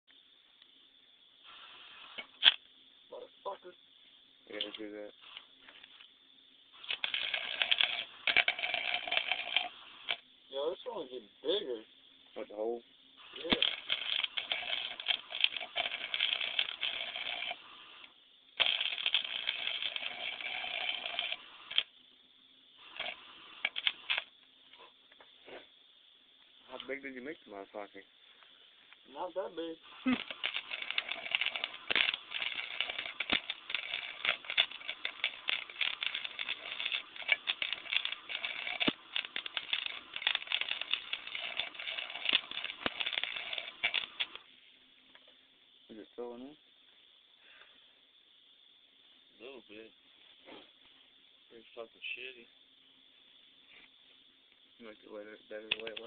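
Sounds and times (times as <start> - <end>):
welding arc crackling: 1.5 - 3.2, 6.7 - 11.6, 13.2 - 22.0, 22.8 - 24.5, 29.1 - 44.5, 54.8 - 56.0.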